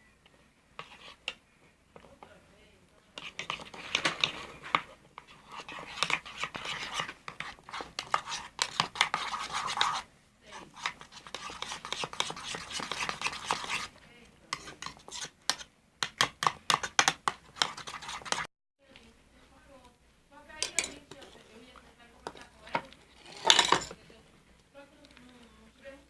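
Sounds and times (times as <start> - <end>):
utensil scraping a bowl: 0.8 - 1.4, 3.2 - 18.5, 22.7 - 24.0.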